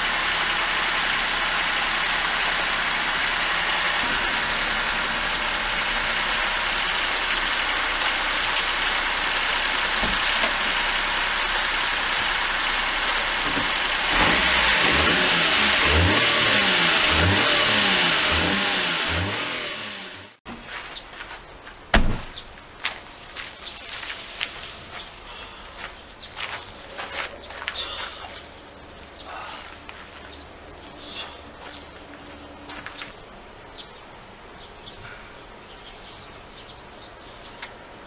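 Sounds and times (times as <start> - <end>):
small car engine revving: 0.0 - 20.4.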